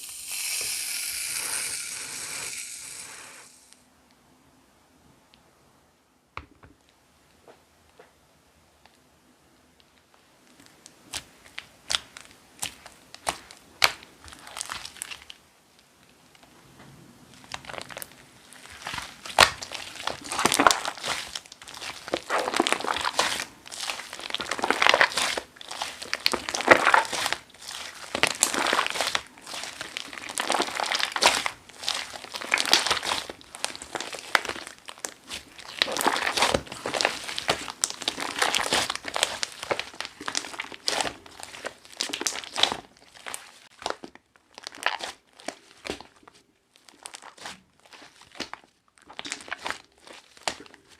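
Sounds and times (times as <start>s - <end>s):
slime crackling and popping: 10.5s - 15.4s, 17.3s - 50.9s.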